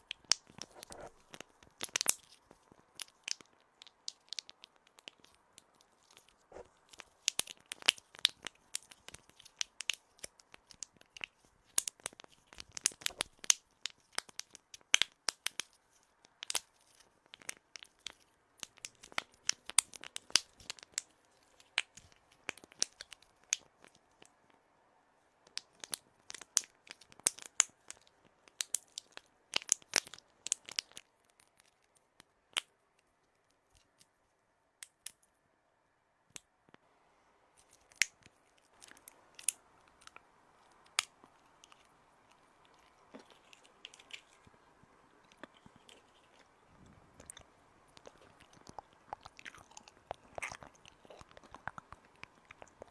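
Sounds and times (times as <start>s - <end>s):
sharp clicks and crackles: 45.2s - 52.9s.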